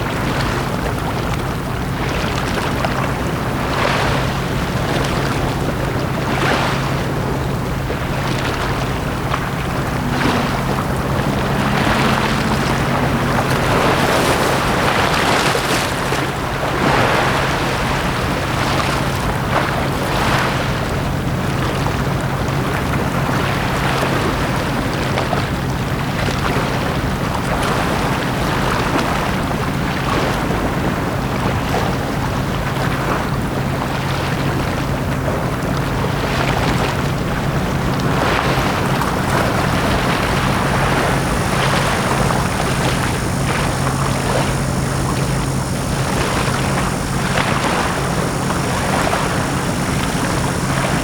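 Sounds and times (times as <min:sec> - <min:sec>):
constant low drone: 0:00.0 - 0:51.0
small waves washing on beach: 0:00.0 - 0:51.0
faint high whine: 0:02.6 - 0:24.8, 0:36.0 - 0:51.0.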